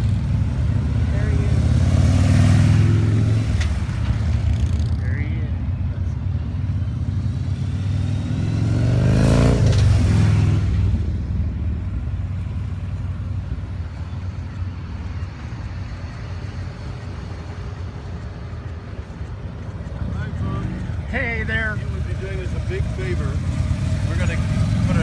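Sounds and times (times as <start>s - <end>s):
vehicle passing by: 0.0s - 25.0s
low engine rumble: 10.6s - 25.0s.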